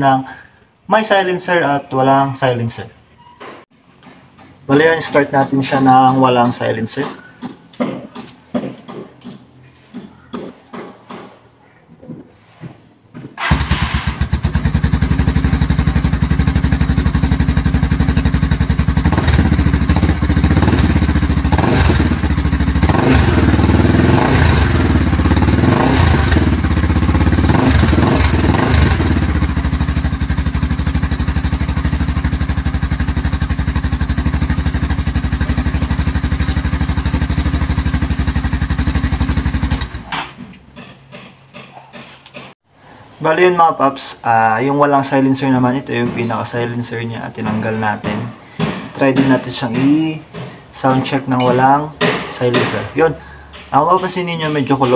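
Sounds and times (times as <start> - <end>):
motorcycle engine revving: 13.4 - 40.1.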